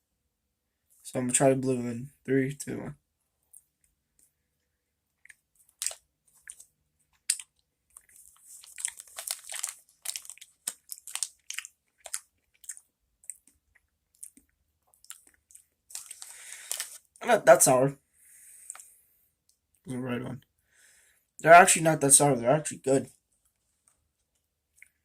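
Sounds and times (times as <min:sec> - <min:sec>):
person chewing gummy candy: 0:05.2 - 0:17.2.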